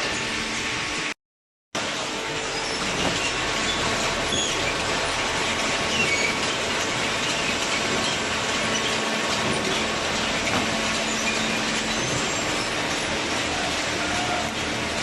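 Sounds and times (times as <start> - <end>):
mechanical running noise: 1.8 - 15.0.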